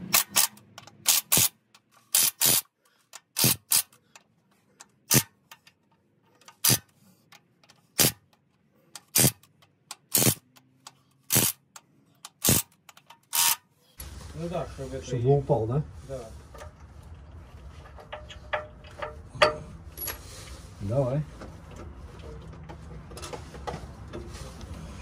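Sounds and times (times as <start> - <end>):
wrench clicking on bolts: 0.0 - 13.6.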